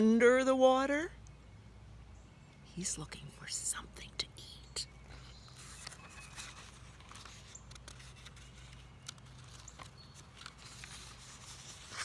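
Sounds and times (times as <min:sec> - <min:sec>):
low steady hum: 0:00.0 - 0:12.0
book pages turning: 0:05.5 - 0:12.0.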